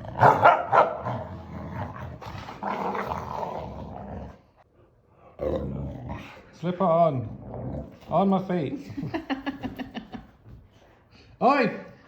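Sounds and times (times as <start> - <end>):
dog growling and grumbling: 0.0 - 4.6, 5.2 - 8.3.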